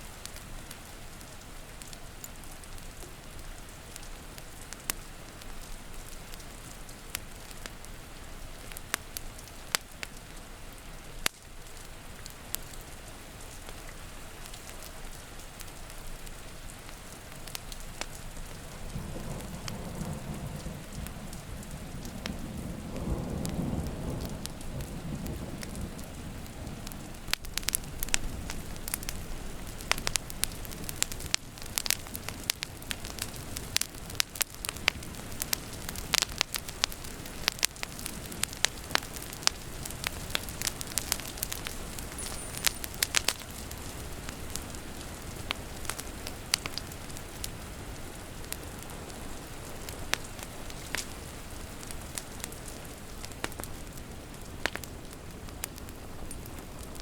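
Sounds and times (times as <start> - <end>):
steady rain: 0.0 - 57.0
crackling wood fire pops: 0.2 - 7.8, 8.6 - 10.4, 11.2 - 57.0
low rumble of thunder: 18.2 - 46.0.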